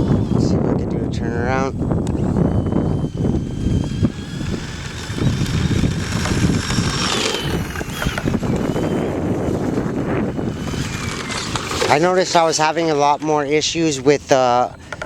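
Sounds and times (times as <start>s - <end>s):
electric motor whining: 0.0s - 15.0s
wind on microphone: 0.0s - 15.0s
tyres rumbling on dirt: 3.2s - 15.0s.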